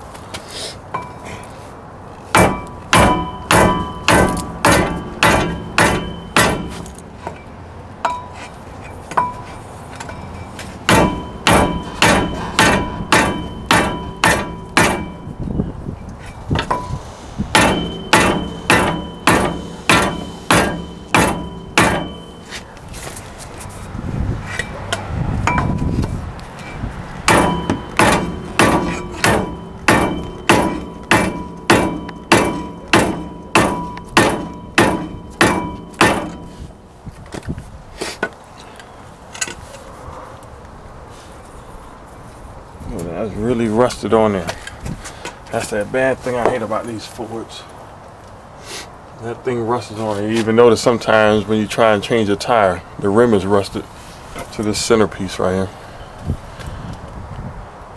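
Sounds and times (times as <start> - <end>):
heavy hammer striking metal hub: 2.3 - 8.4, 9.1 - 22.8, 24.5 - 26.1, 27.2 - 36.9.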